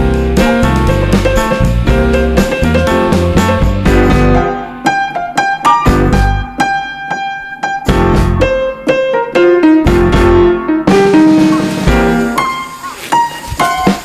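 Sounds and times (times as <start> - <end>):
low bass notes: 0.0 - 4.5, 5.9 - 6.5, 7.9 - 8.6, 9.9 - 10.6
piano melody: 0.0 - 14.0.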